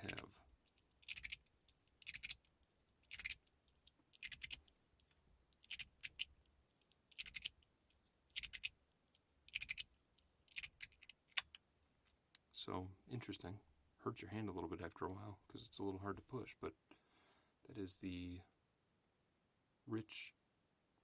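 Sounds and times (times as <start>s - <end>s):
magnetic slider fidget clicking: 0.0s - 1.4s, 2.0s - 2.5s, 3.1s - 3.4s, 4.2s - 4.7s, 5.6s - 6.4s, 7.1s - 7.6s, 8.3s - 8.7s, 9.5s - 9.8s, 10.5s - 11.6s.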